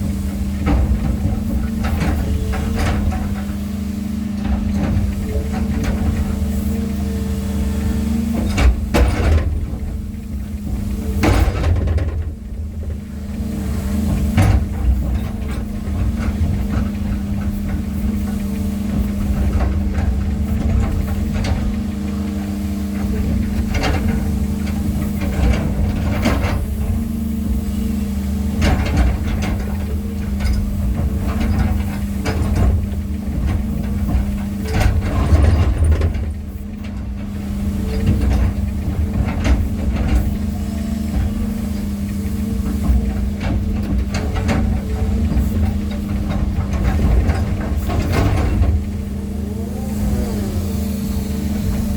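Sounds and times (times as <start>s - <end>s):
heavy diesel engine running: 0.0s - 51.9s.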